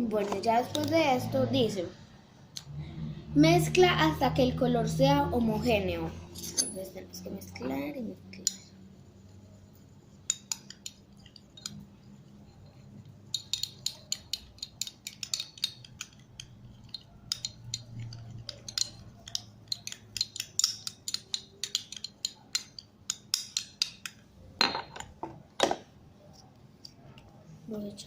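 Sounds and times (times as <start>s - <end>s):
spoon stirring in a bowl: 8.3s - 24.2s.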